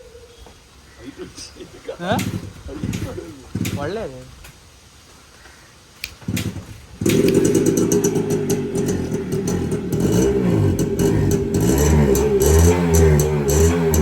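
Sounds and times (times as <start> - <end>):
motorcycle engine starting and revving: 2.1 - 4.2, 6.1 - 14.0.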